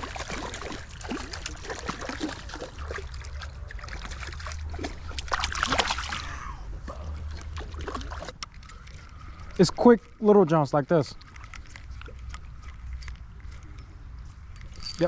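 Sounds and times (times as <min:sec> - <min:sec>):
creek water trickling and splashing: 0:00.0 - 0:14.5.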